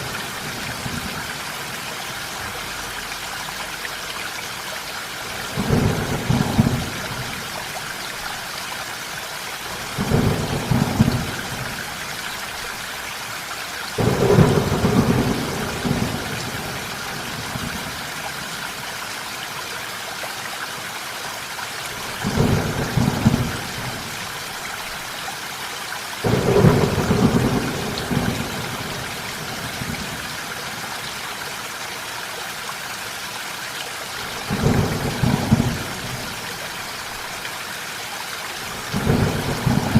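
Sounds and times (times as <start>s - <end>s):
steady rain: 0.0s - 39.9s
low thunder rumbles: 14.0s - 17.9s, 26.3s - 30.2s, 38.9s - 39.9s.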